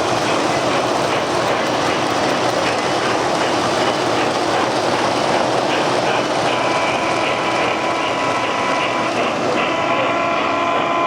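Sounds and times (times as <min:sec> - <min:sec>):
model train wheels clattering: 0:00.0 - 0:10.2.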